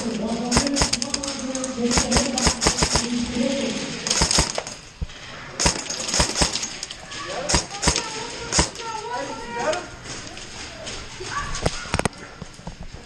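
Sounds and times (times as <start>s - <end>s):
airsoft guns firing: 0.0s - 3.2s, 4.1s - 4.8s, 5.6s - 6.8s, 7.4s - 8.9s.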